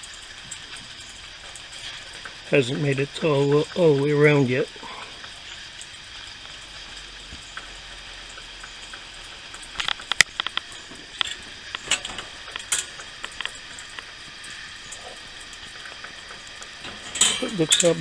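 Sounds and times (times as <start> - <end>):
kerosene heater hissing: 0.0 - 18.0
sharp clicks and ticks: 7.6 - 18.0.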